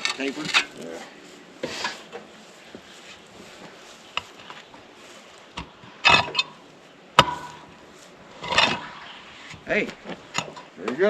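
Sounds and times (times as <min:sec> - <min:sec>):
ringing metal clank: 0:07.2 - 0:07.8
lid scraping: 0:07.2 - 0:10.7.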